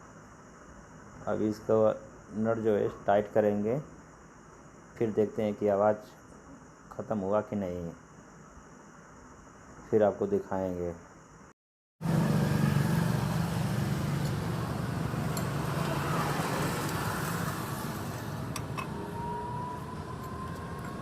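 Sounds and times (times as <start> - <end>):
vehicle engine running: 12.0 - 21.0.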